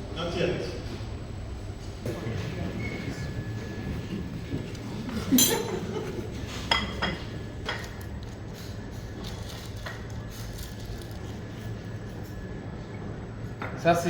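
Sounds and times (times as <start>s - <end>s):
dishes clinking: 5.1s - 8.0s.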